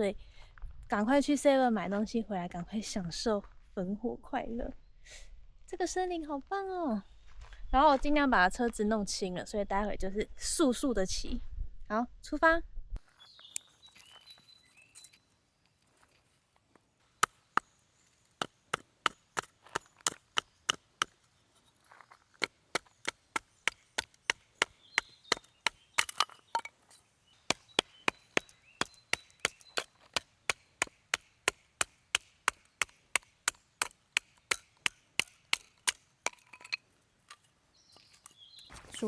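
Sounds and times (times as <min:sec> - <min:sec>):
blade chopping wood: 0:17.2 - 0:17.8, 0:18.4 - 0:21.3, 0:22.4 - 0:26.8, 0:27.5 - 0:39.0.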